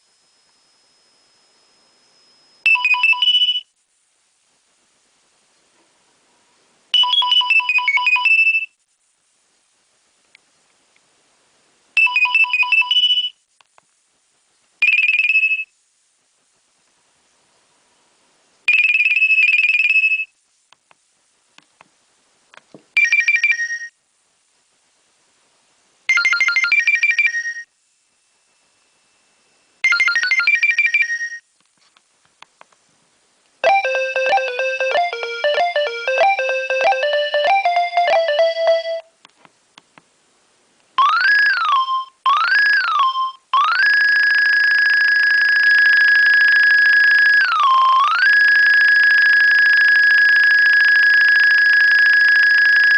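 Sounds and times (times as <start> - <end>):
mobile phone ringtone: 2.6 - 3.6, 7.0 - 8.7, 12.0 - 13.3, 26.1 - 27.7, 29.8 - 31.4, 33.6 - 39.1, 41.0 - 52.9
lower multi-note ringtone melody: 33.6 - 39.1.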